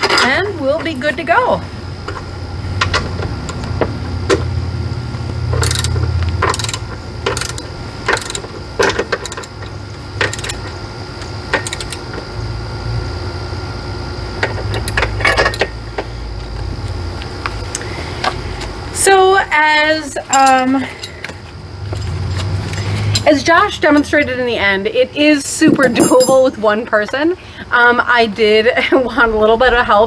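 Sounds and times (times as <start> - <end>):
steady low hum: 0.0 - 30.0
socket ratchet clicking: 5.6 - 9.6, 10.2 - 10.7, 11.6 - 12.0.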